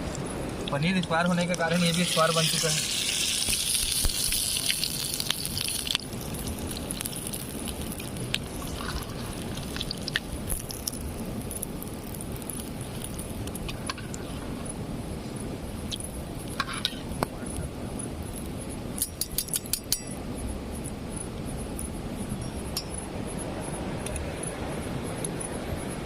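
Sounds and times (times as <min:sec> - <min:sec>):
hot oil sizzling: 0:00.6 - 0:14.8.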